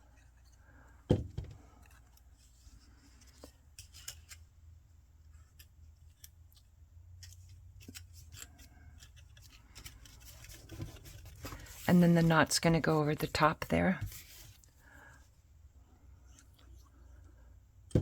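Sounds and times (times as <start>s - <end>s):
thump: 1.1s - 1.6s
paper rustling: 7.2s - 14.8s.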